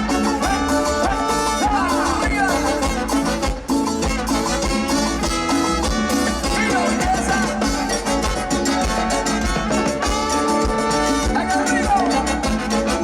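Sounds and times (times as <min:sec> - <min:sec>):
salsa dance band playing: 0:00.0 - 0:13.0.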